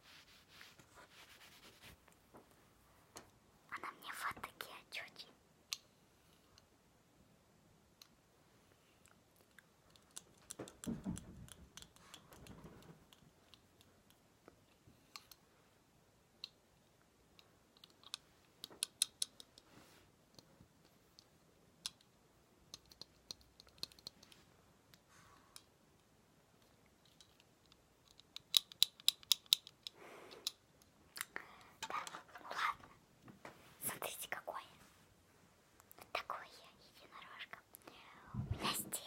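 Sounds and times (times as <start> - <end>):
soft rustle: 0.0 - 3.2, 19.6 - 20.6, 31.9 - 39.0
light clicks and taps: 9.0 - 15.4, 20.3 - 34.2.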